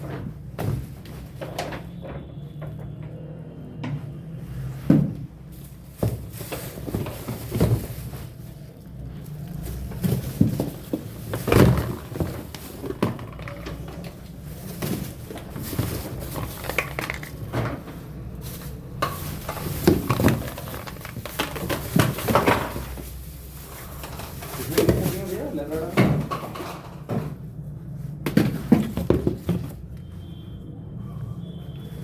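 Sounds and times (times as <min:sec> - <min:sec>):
packaging rustling: 0:05.6 - 0:25.7
containers knocking and clunking: 0:09.5 - 0:18.3, 0:18.9 - 0:23.2, 0:24.0 - 0:27.5, 0:28.2 - 0:29.9.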